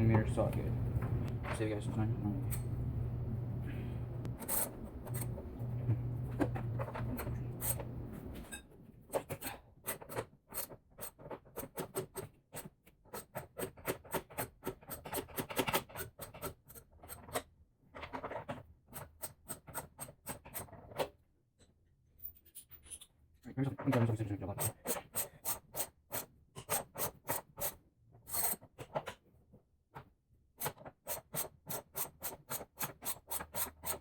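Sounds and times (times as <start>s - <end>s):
low hum: 0.0s - 8.6s.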